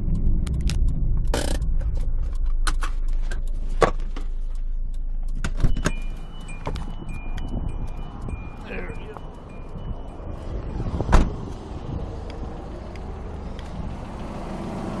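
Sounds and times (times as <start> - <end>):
sharp clicks and rattles: 0.0 - 14.3
car engine rumble: 0.0 - 15.0
car warning chime beeping: 4.6 - 12.0.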